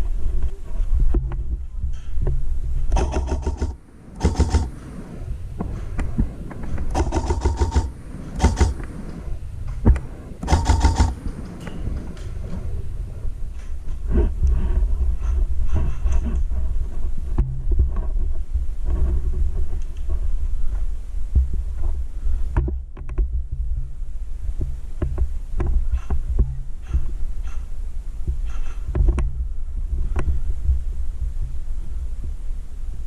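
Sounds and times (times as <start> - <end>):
low rumble of wind noise: 0.0 - 33.0
airsoft guns firing bursts: 2.9 - 4.8, 6.9 - 8.9, 10.4 - 11.3.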